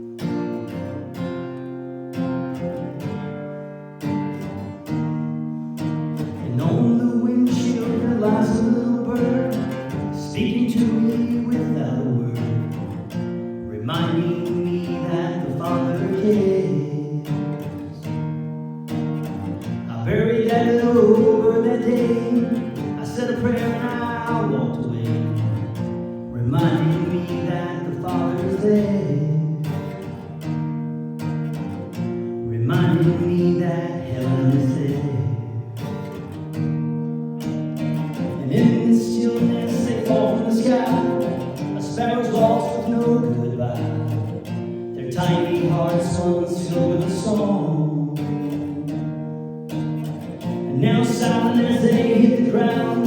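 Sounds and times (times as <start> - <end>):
acoustic guitar strumming: 0.0 - 53.0
person singing: 6.3 - 13.0, 13.7 - 18.1, 19.9 - 25.5, 26.3 - 30.1, 32.4 - 35.8, 38.3 - 49.0, 50.6 - 53.0.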